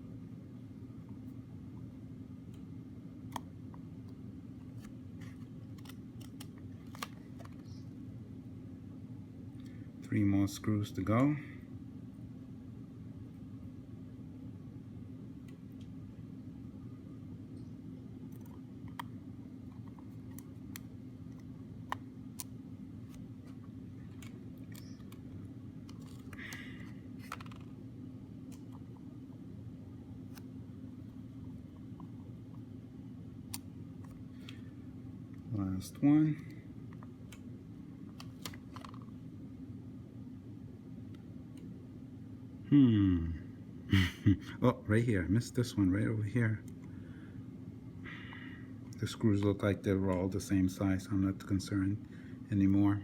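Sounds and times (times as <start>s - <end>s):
steady low hum: 0.0s - 53.0s.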